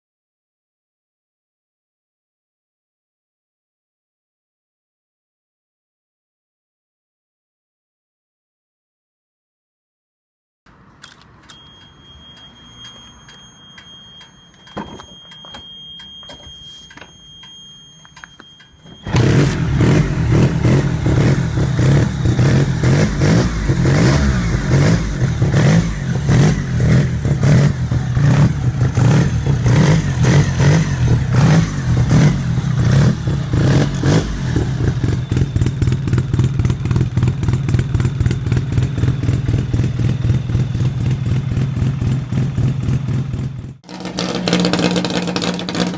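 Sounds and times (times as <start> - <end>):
rotary engine starting and running: 19.0 - 35.5, 43.8 - 45.9.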